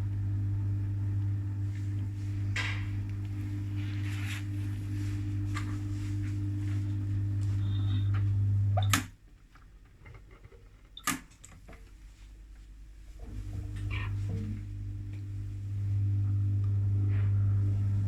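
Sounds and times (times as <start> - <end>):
drain pump humming: 0.0 - 9.1, 13.2 - 18.0.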